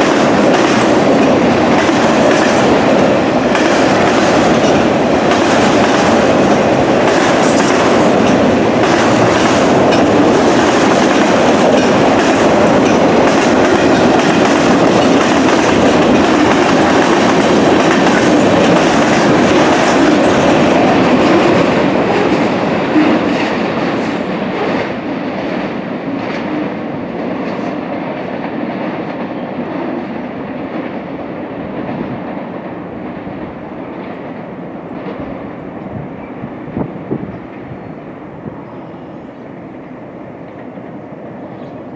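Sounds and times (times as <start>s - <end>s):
train wheels clicking over rail joints: 0.0s - 26.7s.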